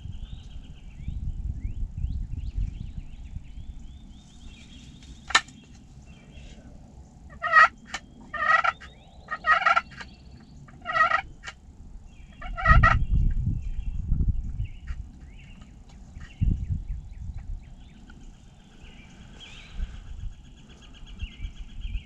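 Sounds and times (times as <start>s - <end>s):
songbirds chirping: 0.0s - 22.0s
wind rumbling on microphone: 0.0s - 22.0s
turkey gobbling: 5.3s - 5.5s, 7.3s - 10.1s, 10.7s - 11.6s, 12.3s - 13.0s.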